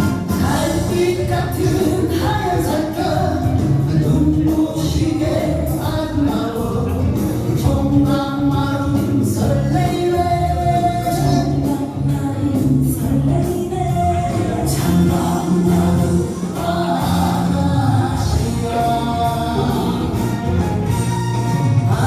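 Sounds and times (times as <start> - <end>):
instrumental accompaniment with beat: 0.0 - 22.0
person singing: 0.0 - 22.0.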